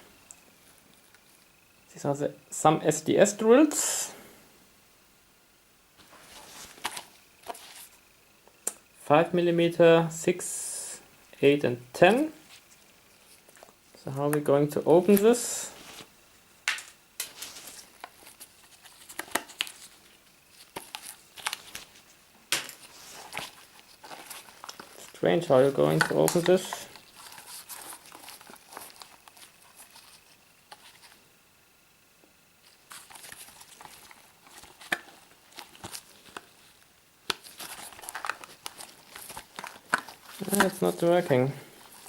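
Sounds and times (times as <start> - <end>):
plastic packaging crinkling: 16.7 - 31.2, 32.7 - 42.0.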